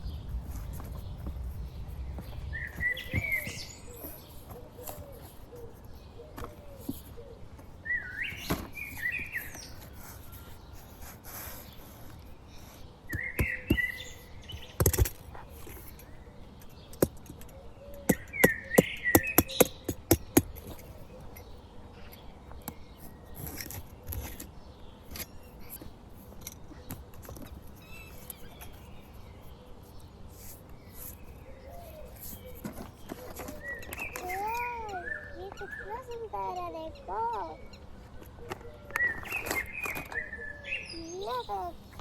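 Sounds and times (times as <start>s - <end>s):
bird-like chirping: 0.0s - 42.0s
sharp clicks and knocks: 13.1s - 21.5s.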